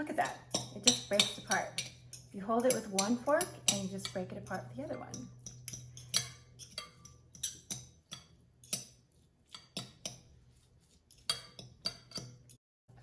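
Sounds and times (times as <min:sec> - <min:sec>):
forks clinking and scraping a bowl: 0:00.0 - 0:12.6.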